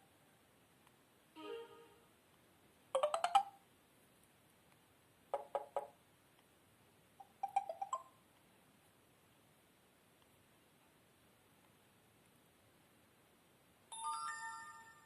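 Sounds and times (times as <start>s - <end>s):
phone notification tones: 3.0s - 3.5s.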